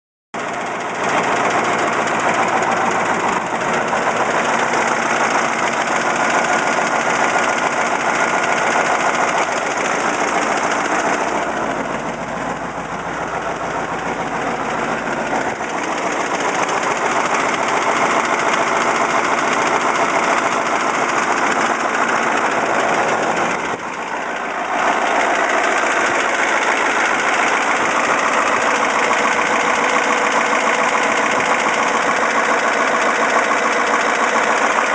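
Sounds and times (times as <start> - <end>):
diesel engine knocking: 0.4 - 34.9.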